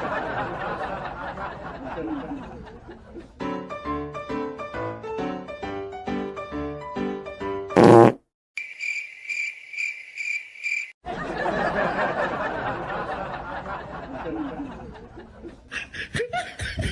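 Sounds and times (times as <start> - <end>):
wet fart sound: 7.8 - 8.2
cricket chirping: 8.6 - 11.0
snickering laughter: 14.0 - 16.9.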